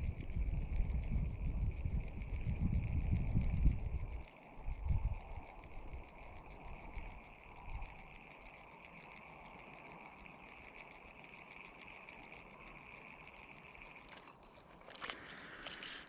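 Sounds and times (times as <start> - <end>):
wind buffeting microphone: 0.0 - 8.1.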